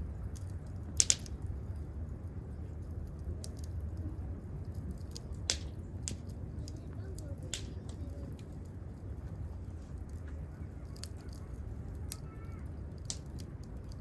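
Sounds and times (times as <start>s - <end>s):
campfire crackling and popping: 0.2s - 14.0s.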